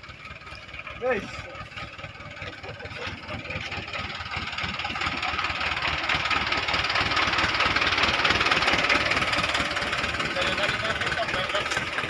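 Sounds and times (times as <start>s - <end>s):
truck engine running: 0.0s - 12.0s.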